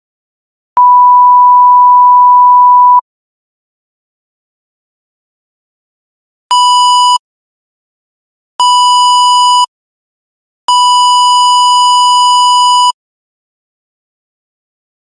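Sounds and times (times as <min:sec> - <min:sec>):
censor bleep tone: 0:00.8 - 0:03.0, 0:06.5 - 0:07.2, 0:08.6 - 0:09.7, 0:10.7 - 0:13.0.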